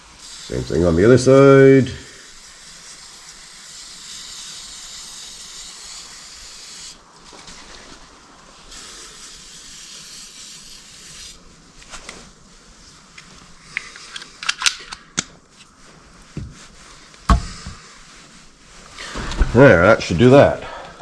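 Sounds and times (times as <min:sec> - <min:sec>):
aerosol can spraying: 0:00.1 - 0:07.8, 0:08.7 - 0:11.4.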